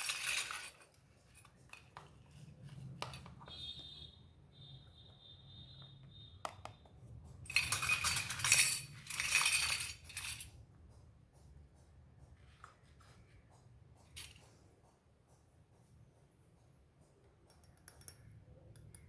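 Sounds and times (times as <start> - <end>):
toy kitchen pieces clattering: 0.0 - 2.4, 7.5 - 10.6.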